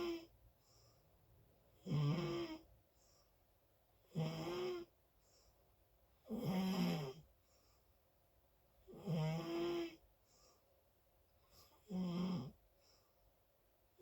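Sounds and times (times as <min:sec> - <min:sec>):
loud buzzing snores: 0:01.8 - 0:02.6, 0:04.1 - 0:04.9, 0:06.3 - 0:07.2, 0:08.9 - 0:10.0, 0:11.8 - 0:12.6.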